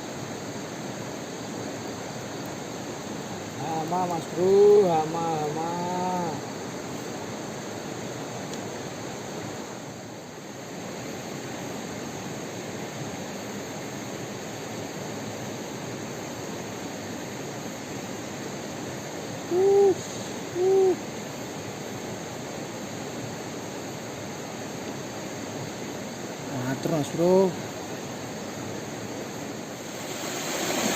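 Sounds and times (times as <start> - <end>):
faint insect drone: 0.0 - 30.9
rushing water: 29.5 - 30.9.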